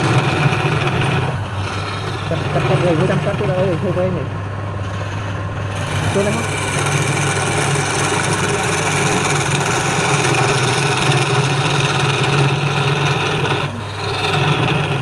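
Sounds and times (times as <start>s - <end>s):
lathe motor hum: 0.0s - 15.0s
tool cutting spinning wood: 0.0s - 15.0s.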